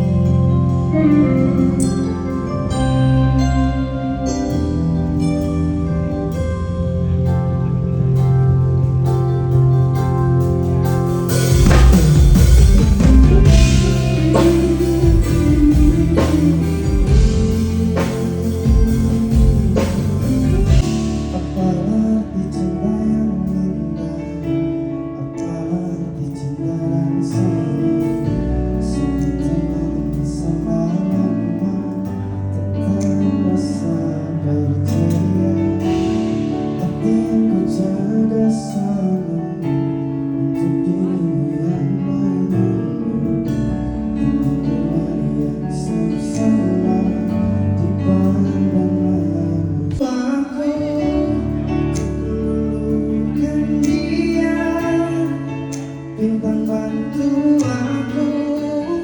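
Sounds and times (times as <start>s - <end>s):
guitar chords: 0.0s - 23.7s
bass notes: 0.0s - 59.0s
drums: 7.2s - 22.0s.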